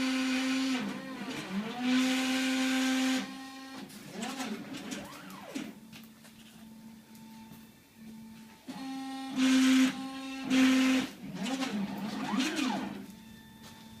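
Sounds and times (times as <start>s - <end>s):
stepper motors whining: 0.0s - 5.8s, 8.7s - 13.2s.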